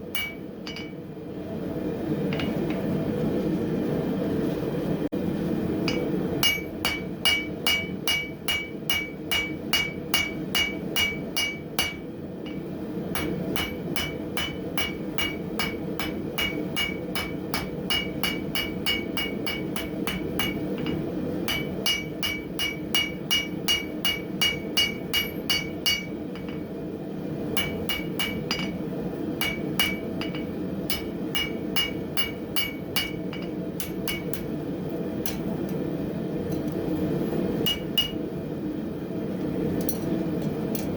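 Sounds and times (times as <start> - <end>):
hammer striking steel on anvil: 0.0 - 1.0, 2.3 - 2.8, 5.8 - 26.7, 27.5 - 28.8, 29.4 - 34.6, 35.2 - 35.9, 37.6 - 38.2.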